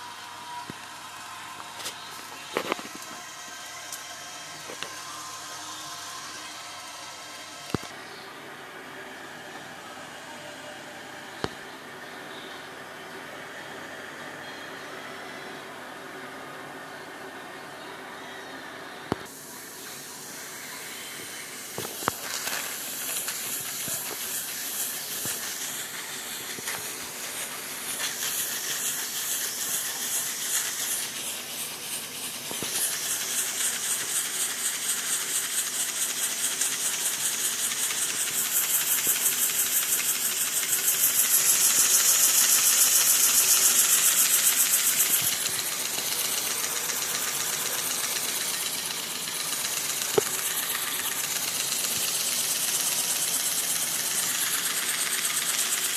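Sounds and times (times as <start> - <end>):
miniature steam engine chuffing: 19.2 - 55.9.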